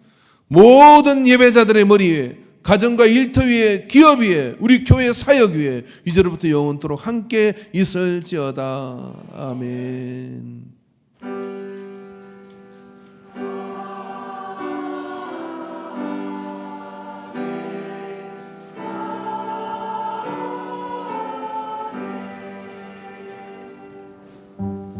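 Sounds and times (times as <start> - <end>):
choir singing sustained chords: 13.0 - 24.9.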